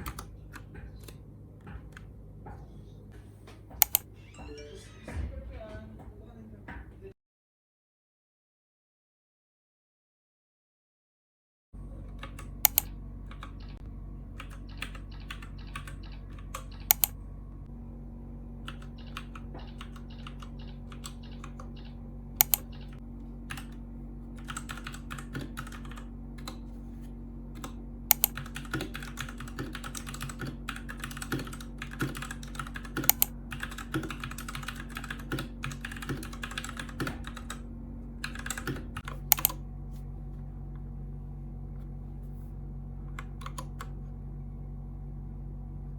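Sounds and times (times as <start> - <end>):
steady low hum: 0.0 - 7.2, 11.8 - 45.9
typing on mechanical keyboard: 14.4 - 17.2, 18.7 - 23.8, 24.4 - 26.6, 27.6 - 37.6, 38.2 - 39.6.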